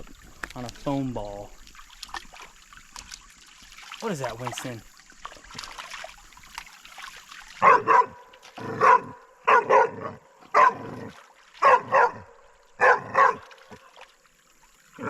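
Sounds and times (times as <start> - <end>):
dog barking: 7.6 - 10.9, 11.6 - 13.5.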